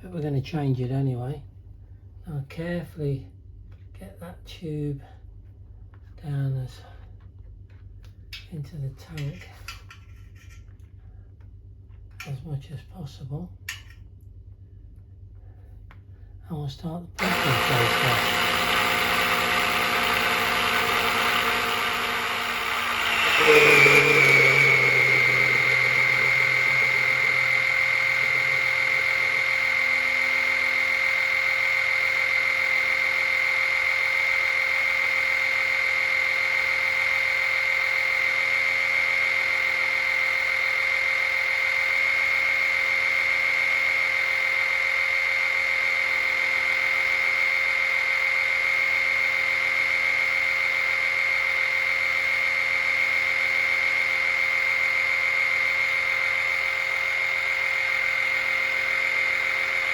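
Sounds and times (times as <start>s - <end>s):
electric oil pump whining: 17.2s - 59.9s.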